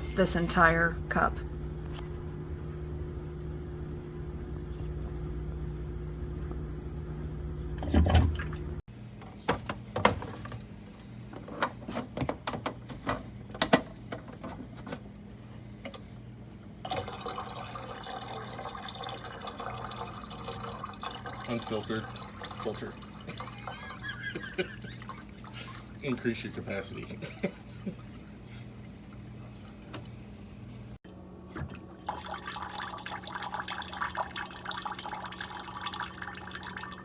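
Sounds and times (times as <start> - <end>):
low hum: 0.0 - 8.8
water trickling into a cup: 16.9 - 30.7, 31.8 - 37.0.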